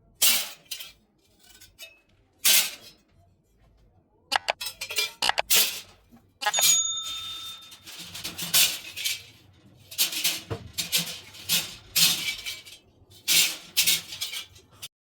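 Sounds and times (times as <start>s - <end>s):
hammer clinking on metal: 6.4s - 7.8s.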